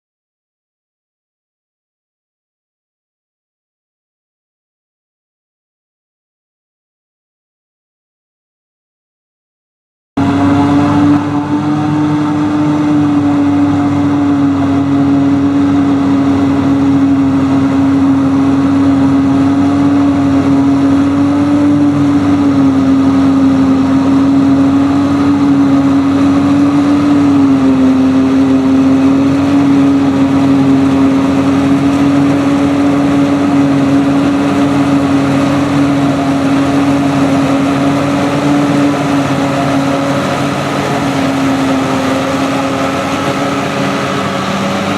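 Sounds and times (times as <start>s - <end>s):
forage harvester humming: 10.2s - 44.9s.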